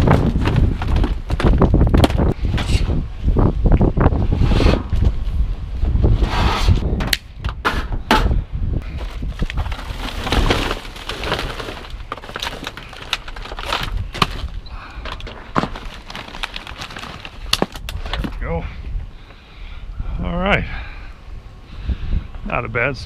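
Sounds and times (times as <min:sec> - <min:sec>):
wind buffeting microphone: 0:00.0 - 0:23.0
junk clattering in a dumpster: 0:07.6 - 0:18.3.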